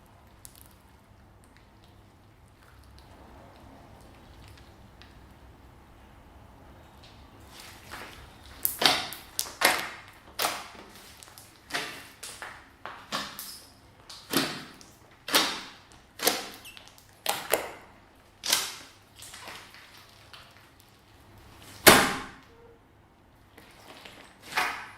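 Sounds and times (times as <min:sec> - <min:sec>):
slime squelching and popping: 0:07.6 - 0:21.0.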